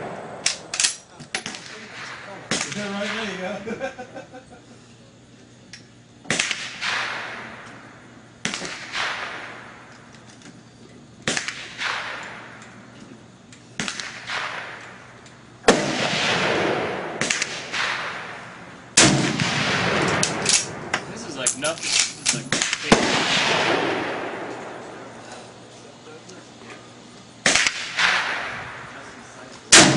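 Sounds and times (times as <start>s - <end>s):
gunshots echoing: 0.0s - 3.5s, 6.3s - 7.7s, 8.4s - 9.9s, 11.2s - 12.6s, 13.8s - 15.0s, 15.6s - 21.0s, 22.3s - 25.2s, 27.4s - 29.1s, 29.7s - 29.9s.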